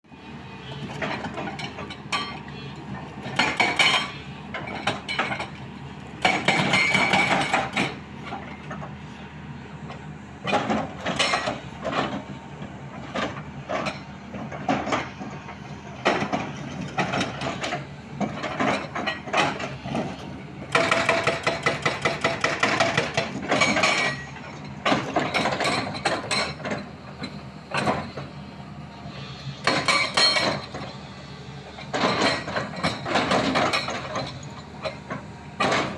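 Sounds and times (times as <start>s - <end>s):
diesel engine running: 0.1s - 35.9s
hydraulic rock breaker hammering: 16.0s - 27.0s.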